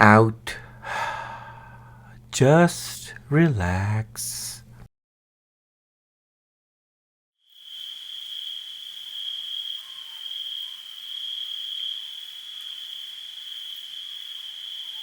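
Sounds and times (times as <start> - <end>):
crickets chirring: 7.5 - 15.0.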